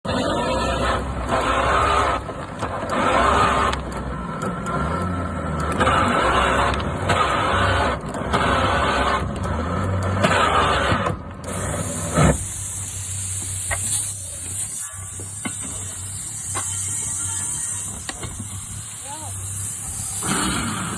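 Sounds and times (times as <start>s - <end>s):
anchor windlass motor surging: 0.1s - 20.9s
steady hiss: 11.5s - 20.9s.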